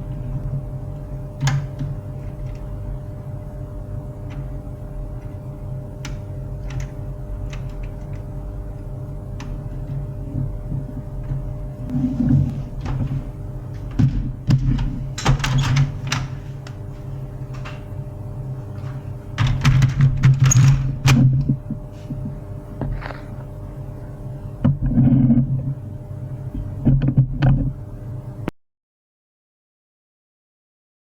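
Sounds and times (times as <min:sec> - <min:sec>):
printer motor hum: 0:00.0 - 0:28.3.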